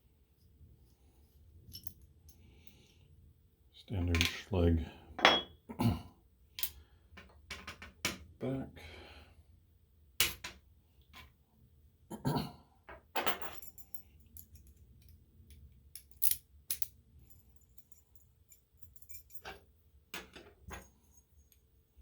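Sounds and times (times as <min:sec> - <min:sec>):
small metal clicks and clinks: 0:01.7 - 0:02.0, 0:13.2 - 0:19.6.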